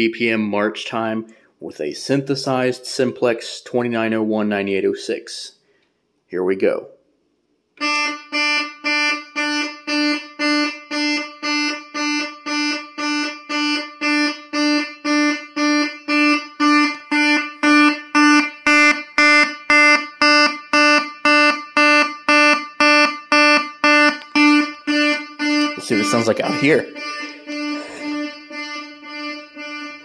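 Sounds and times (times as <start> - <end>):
synthesizer fire alarm horn blasts: 7.8 - 30.0.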